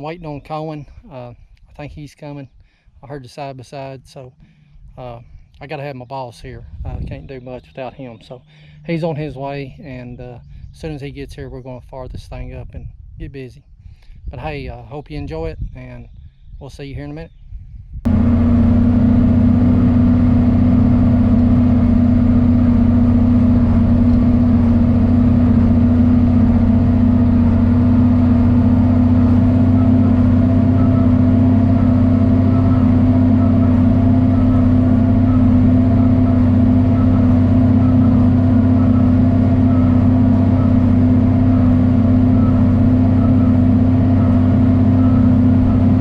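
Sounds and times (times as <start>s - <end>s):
tractor diesel engine running: 5.7s - 11.4s, 18.1s - 46.0s.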